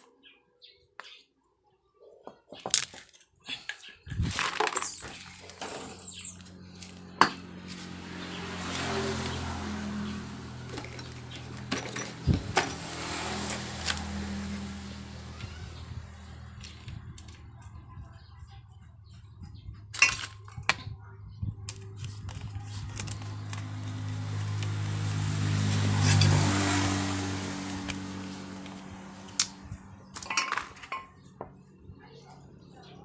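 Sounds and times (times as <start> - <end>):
metal tools clicking and knocking: 10.7 - 13.7, 30.2 - 31.2.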